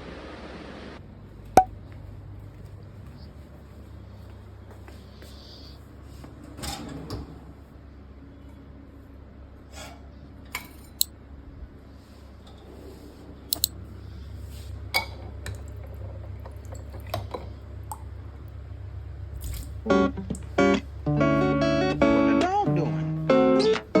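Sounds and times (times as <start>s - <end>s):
low steady hum: 13.3s - 24.0s.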